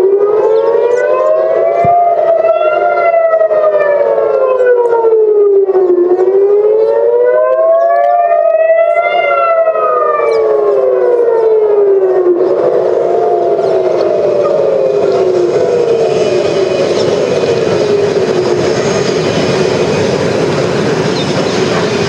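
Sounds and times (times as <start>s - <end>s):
air-raid sirens wailing: 0.0s - 22.0s
steady rushing noise: 11.0s - 22.0s.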